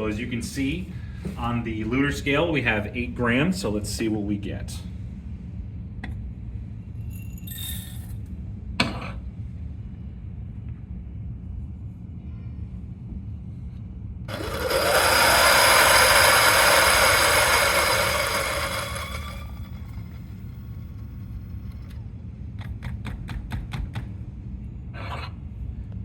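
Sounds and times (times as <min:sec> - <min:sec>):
coffee grinder grinding beans: 0:14.3 - 0:20.4
grinder motor whine: 0:14.3 - 0:21.1.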